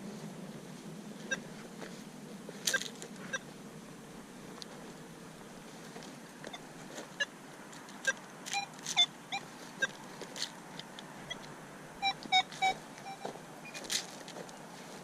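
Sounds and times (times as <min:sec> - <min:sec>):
metal detector beeping: 0:01.3 - 0:01.5, 0:02.7 - 0:03.5, 0:06.4 - 0:07.3, 0:08.0 - 0:10.0, 0:12.0 - 0:14.0.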